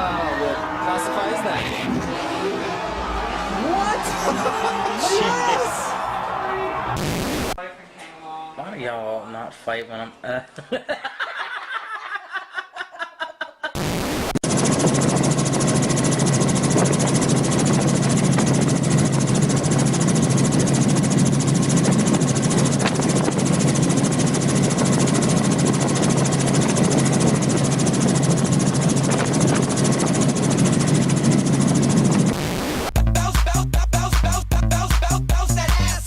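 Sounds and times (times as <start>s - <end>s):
loud pulsing engine drone: 13.8s - 32.9s.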